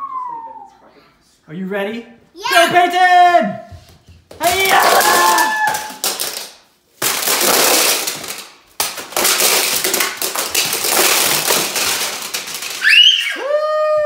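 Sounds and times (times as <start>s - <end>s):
plastic tiles clattering down: 4.5s - 13.2s.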